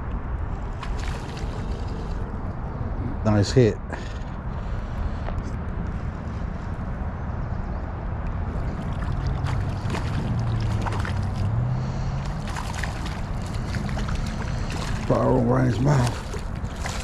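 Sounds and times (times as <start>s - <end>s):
wind on microphone: 4.2s - 17.0s
river water rushing: 8.6s - 17.0s.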